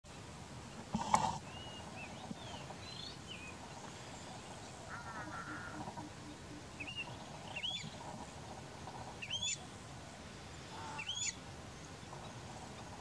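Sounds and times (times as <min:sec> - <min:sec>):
steady background hiss: 0:00.1 - 0:13.0
bird whistling calls: 0:04.9 - 0:07.8.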